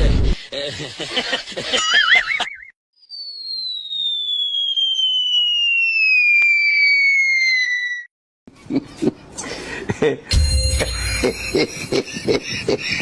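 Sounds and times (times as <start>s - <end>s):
cartoon falling whistle: 3.0s - 8.1s.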